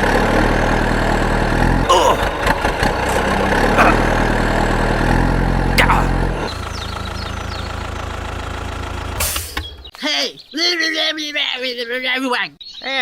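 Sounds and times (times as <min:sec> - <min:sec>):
engine idling: 0:00.0 - 0:09.9.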